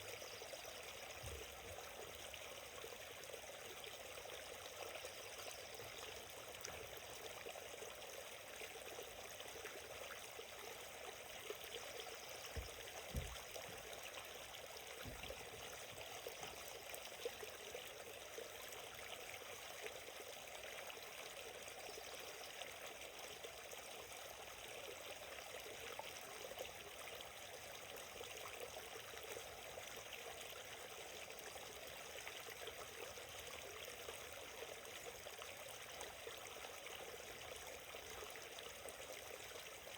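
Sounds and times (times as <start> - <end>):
stream flowing: 0.0 - 39.9.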